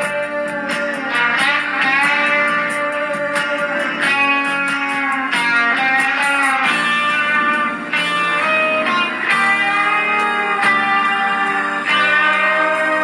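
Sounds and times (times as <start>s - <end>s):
electric guitar chords ringing: 0.0s - 13.0s.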